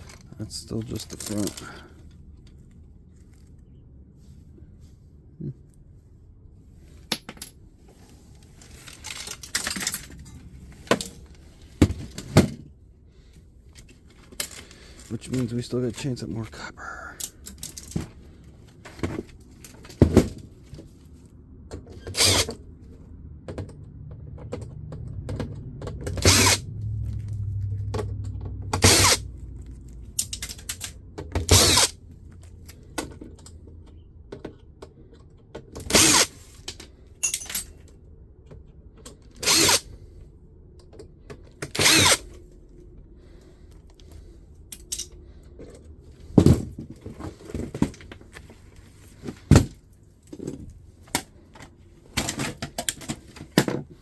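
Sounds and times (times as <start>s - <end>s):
clacks and rattles of parts: 0.0s - 3.5s, 8.3s - 12.7s, 13.6s - 16.5s, 17.2s - 22.6s, 23.3s - 54.0s
low hum: 24.6s - 31.0s.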